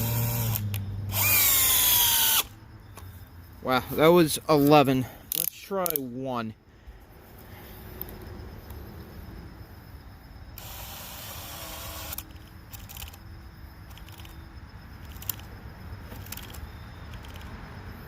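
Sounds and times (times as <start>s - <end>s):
drill clutch slipping and ratcheting: 0.0s - 3.1s, 5.3s - 6.1s, 10.6s - 13.2s, 13.9s - 14.4s, 15.0s - 17.5s
sharp clicks: 0.0s - 3.1s, 4.6s - 6.1s, 10.6s - 13.2s, 13.9s - 14.4s, 15.0s - 15.5s, 16.1s - 17.5s.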